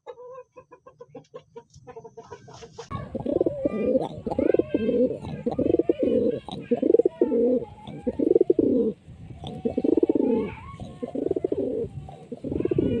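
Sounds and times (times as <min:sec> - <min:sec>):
pigeon cooing: 0:03.0 - 0:13.0.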